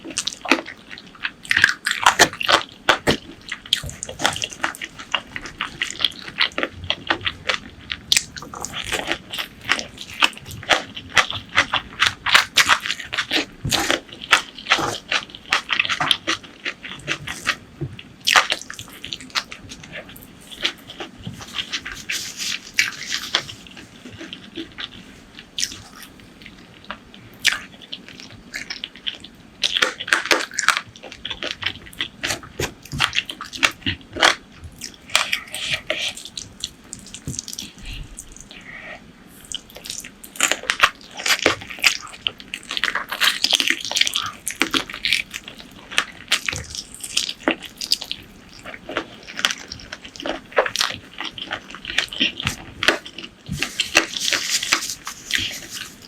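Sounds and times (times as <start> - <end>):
wet chewing and lip smacks: 0.1 - 38.7.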